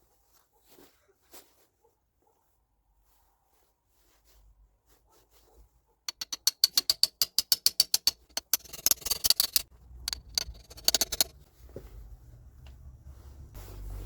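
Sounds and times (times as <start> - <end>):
ratchet wrench clicking: 6.1 - 11.4.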